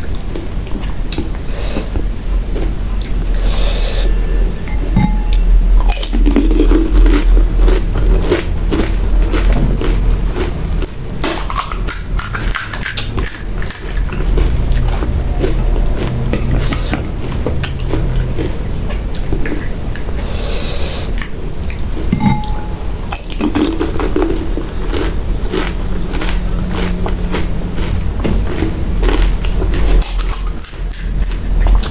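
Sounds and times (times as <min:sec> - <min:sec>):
crunching and chewing: 0:00.0 - 0:20.6, 0:21.2 - 0:31.9.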